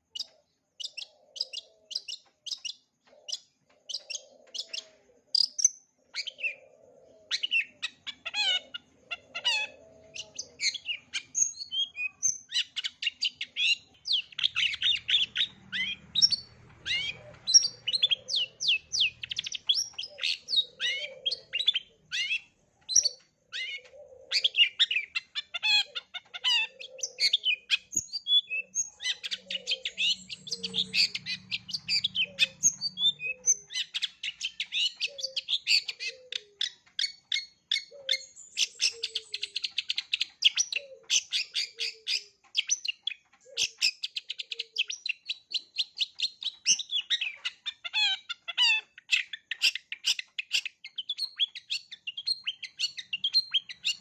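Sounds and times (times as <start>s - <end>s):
shrike singing: 6.2s - 42.3s.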